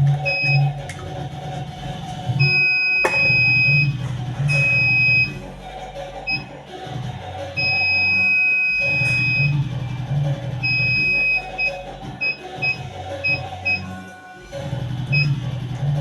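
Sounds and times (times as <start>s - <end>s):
background music: 0.0s - 16.0s
washing machine buzzer beeping: 0.2s - 0.8s, 2.4s - 5.4s, 6.2s - 6.5s, 7.6s - 9.6s, 10.6s - 14.1s, 15.1s - 15.4s.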